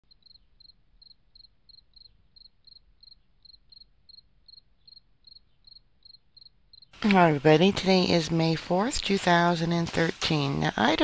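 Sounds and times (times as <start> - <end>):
cricket chirping: 0.0 - 7.0.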